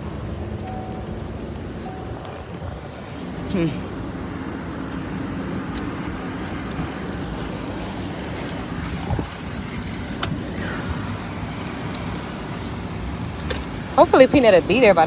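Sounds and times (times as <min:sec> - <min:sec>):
car engine and road noise: 0:00.0 - 0:15.0.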